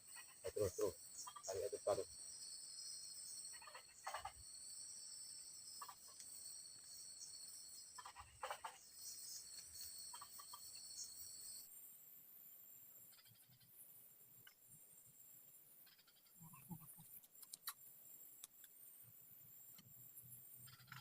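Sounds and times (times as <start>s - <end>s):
insects chorus: 0.0s - 21.0s.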